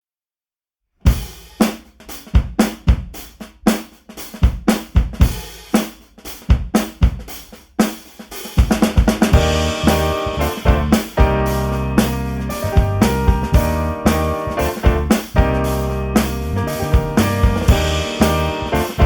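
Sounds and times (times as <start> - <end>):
drum kit beat: 1.0 - 19.0
band playing: 8.8 - 19.0.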